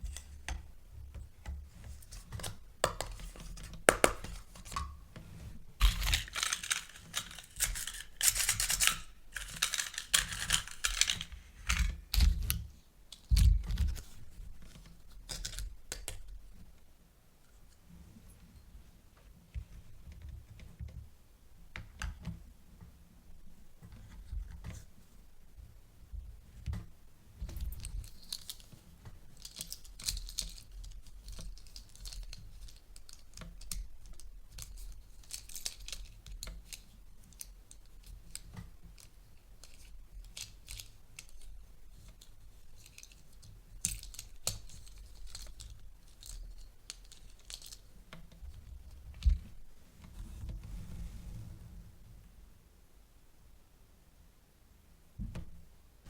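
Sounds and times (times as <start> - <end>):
packaging tearing and crinkling: 5.8 - 12.0.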